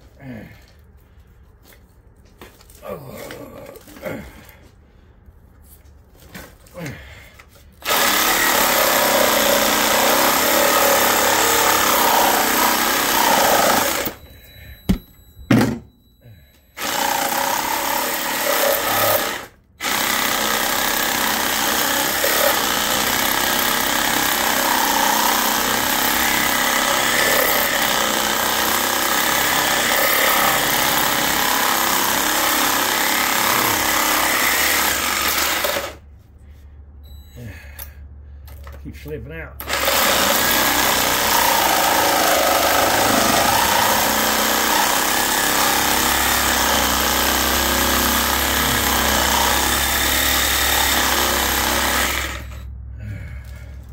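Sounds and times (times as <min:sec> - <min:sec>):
reciprocating saw cutting copper: 0:07.8 - 0:14.2, 0:16.8 - 0:36.0, 0:39.6 - 0:52.6.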